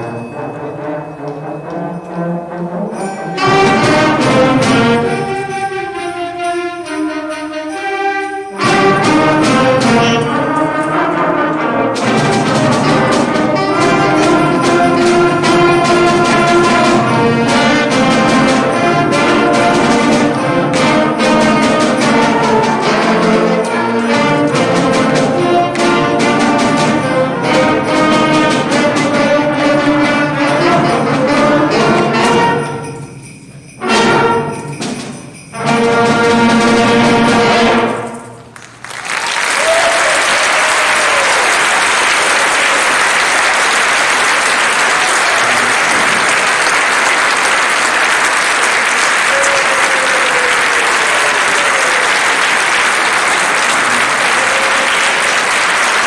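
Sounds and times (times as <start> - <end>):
brass ensemble playing: 0.0 - 56.0
audience applauding: 38.4 - 56.0.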